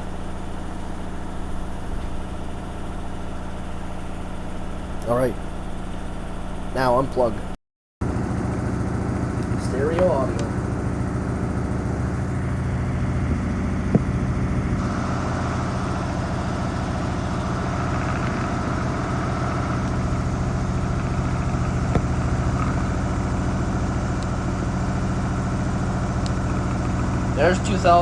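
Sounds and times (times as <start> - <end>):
washing machine drum spinning: 8.0 - 28.0.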